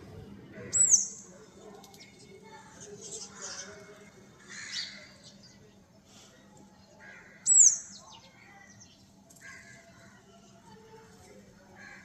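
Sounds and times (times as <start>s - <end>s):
sparrows chirping: 0.5s - 6.2s, 6.8s - 10.5s.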